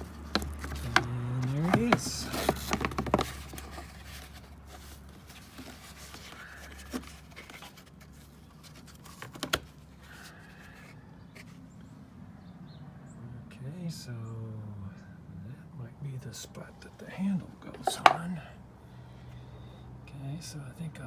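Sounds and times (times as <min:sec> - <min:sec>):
handling of parts: 0:00.0 - 0:09.9, 0:17.4 - 0:18.4
sharp clicks and knocks: 0:17.7 - 0:18.2.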